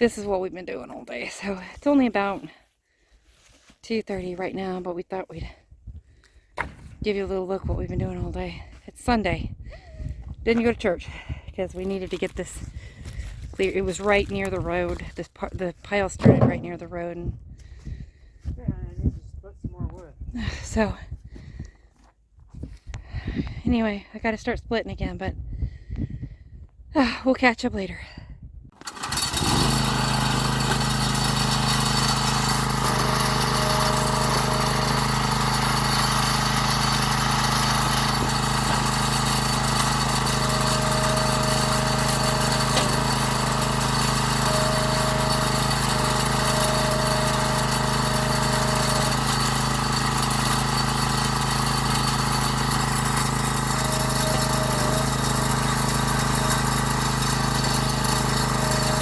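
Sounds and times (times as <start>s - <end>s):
log splitter engine running: 16.2s - 16.9s, 28.8s - 59.0s.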